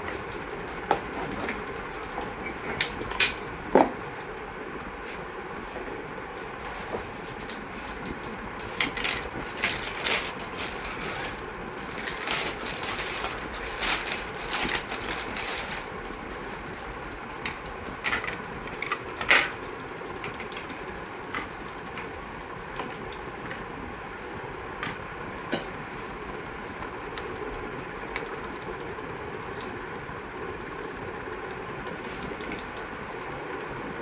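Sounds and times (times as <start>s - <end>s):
steady background noise: 0.0s - 34.0s
plastic and metal parts clattering: 8.8s - 15.9s.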